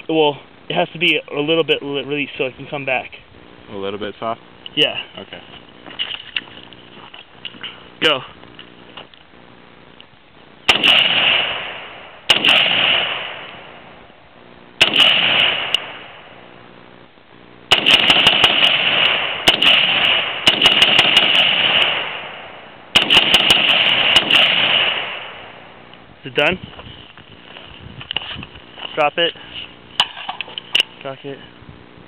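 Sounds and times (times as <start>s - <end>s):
rifle shots echoing: 10.6s - 14.1s, 14.8s - 16.5s, 17.7s - 25.9s.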